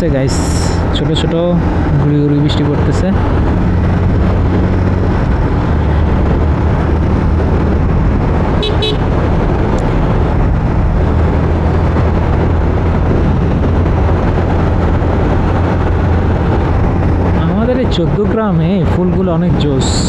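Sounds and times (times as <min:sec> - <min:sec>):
wind rushing on microphone: 0:00.0 - 0:20.0
motorcycle engine running: 0:00.4 - 0:17.4
horn toots: 0:08.6 - 0:09.1.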